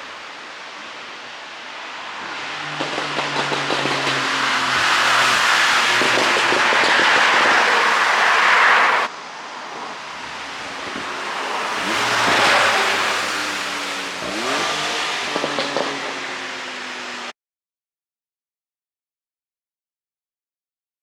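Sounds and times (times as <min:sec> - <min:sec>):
car engine revving: 0:00.0 - 0:17.3
exhaust pops: 0:02.2 - 0:08.2.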